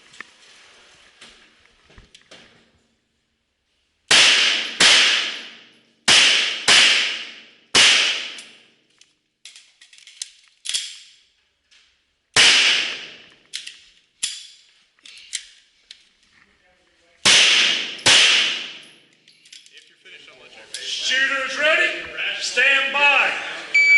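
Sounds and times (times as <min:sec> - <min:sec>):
pistol shots with long echo: 0:04.1 - 0:08.6, 0:12.4 - 0:13.2, 0:17.2 - 0:18.8.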